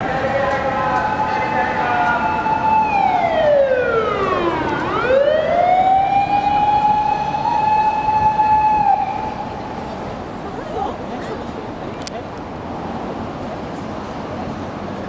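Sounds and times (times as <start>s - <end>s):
fire engine siren wailing: 0.9s - 9.8s.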